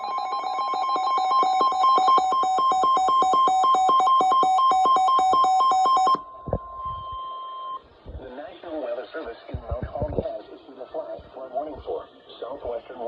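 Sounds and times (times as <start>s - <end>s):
steady warning alarm tone: 0.0s - 7.9s
rapid alternating beeping: 0.0s - 8.3s.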